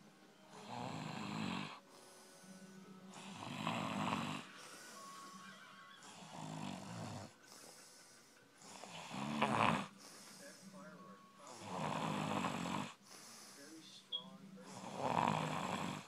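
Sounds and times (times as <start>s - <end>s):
quiet breathing: 0.0s - 16.0s
loud rasping snores: 0.5s - 2.2s, 3.1s - 5.2s, 6.0s - 8.0s, 8.6s - 10.5s, 11.4s - 13.3s, 14.7s - 16.0s.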